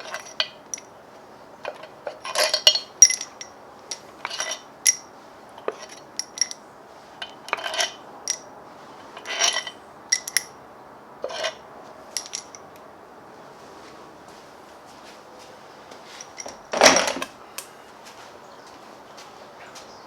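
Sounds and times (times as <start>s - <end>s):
metal tools clinking and clanking: 0.0s - 0.9s, 1.6s - 6.6s, 7.2s - 10.6s, 11.2s - 11.6s, 12.2s - 12.7s, 16.2s - 17.3s.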